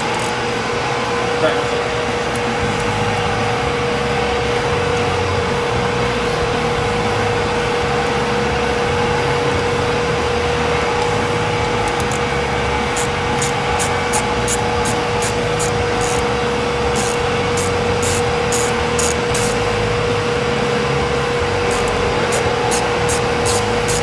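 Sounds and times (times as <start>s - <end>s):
machine whining and rumbling: 0.0s - 24.0s
sharp ticks: 11.7s - 20.1s, 21.4s - 24.0s.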